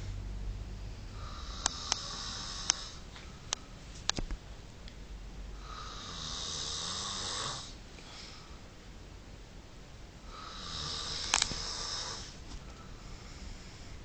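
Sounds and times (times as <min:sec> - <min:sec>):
hissing snores: 0:01.1 - 0:03.0, 0:05.6 - 0:08.4, 0:10.3 - 0:12.4.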